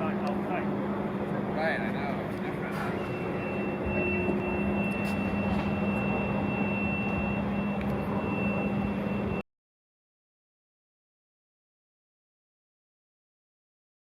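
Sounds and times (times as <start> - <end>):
thin high whine: 0.0 - 9.4
truck engine idling: 0.0 - 9.4.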